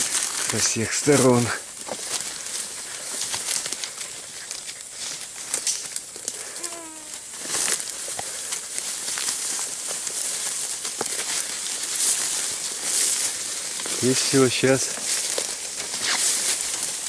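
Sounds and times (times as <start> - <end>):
footsteps rustling through undergrowth: 0.0 - 17.0
twigs crackling: 0.0 - 17.0
short falling whining call: 6.5 - 7.2.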